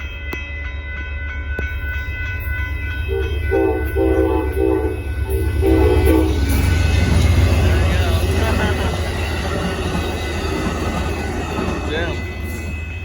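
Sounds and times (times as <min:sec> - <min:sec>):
diesel locomotive rumble: 0:02.3 - 0:13.0
train air horn blasts: 0:03.1 - 0:06.7.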